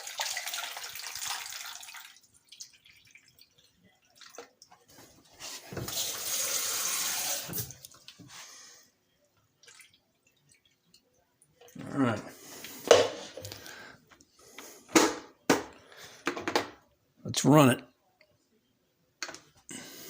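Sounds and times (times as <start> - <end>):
water pouring into a container: 0.0 - 4.8.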